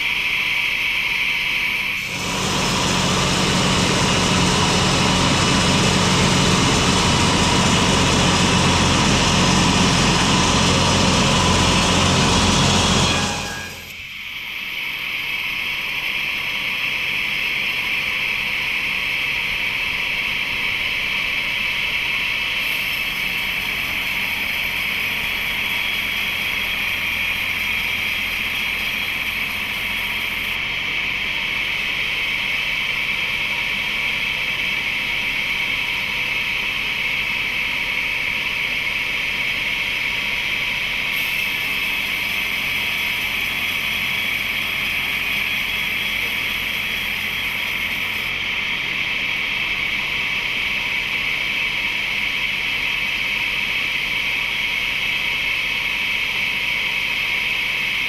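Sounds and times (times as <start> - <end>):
woodworking machine hissing: 0.0 - 58.0.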